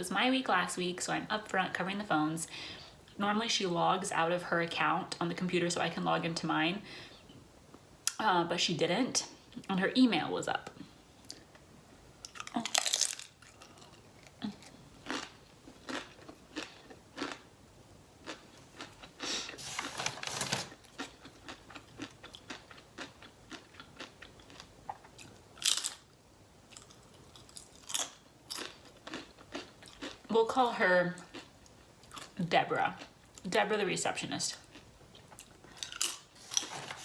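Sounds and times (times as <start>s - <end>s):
wet chewing and crunching: 12.2s - 17.4s, 18.2s - 26.1s, 26.7s - 30.3s, 34.6s - 37.0s.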